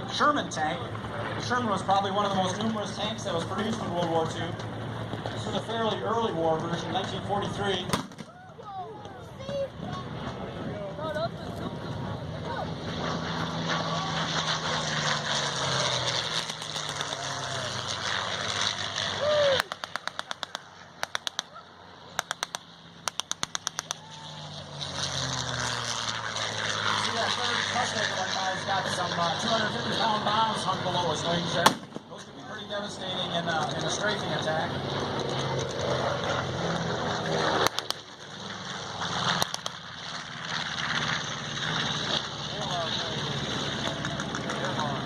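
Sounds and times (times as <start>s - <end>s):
piston plane engine droning: 0.0s - 45.0s
sharp clicks: 22.2s - 24.0s, 37.6s - 38.0s.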